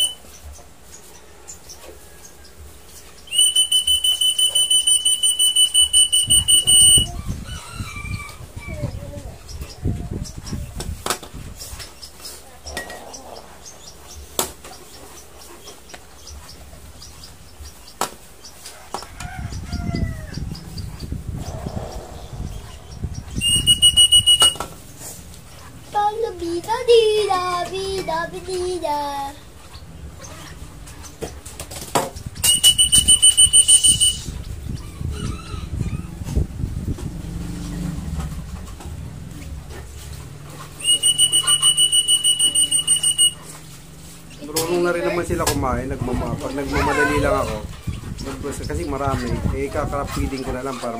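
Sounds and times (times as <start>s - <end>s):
faint high chirps: 0.0s - 8.8s, 20.6s - 24.8s, 32.4s - 34.4s, 40.8s - 43.6s
rapid electronic beeping: 4.0s - 7.1s, 23.2s - 24.6s, 32.4s - 34.3s, 41.0s - 43.4s
rooster crowing: 6.7s - 8.9s, 18.6s - 20.6s, 34.8s - 36.2s.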